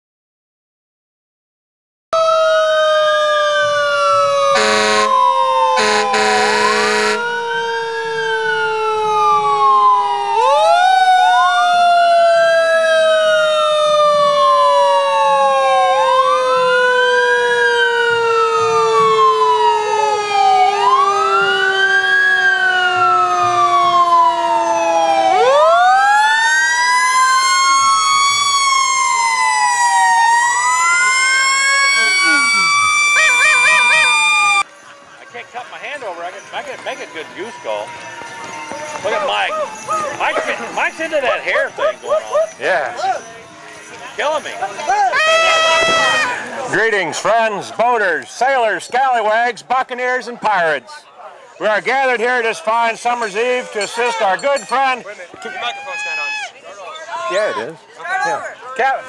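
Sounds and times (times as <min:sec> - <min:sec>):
fire truck sirens wailing: 0:02.2 - 0:57.5
air horn blasts: 0:04.5 - 0:05.2, 0:05.8 - 0:07.4.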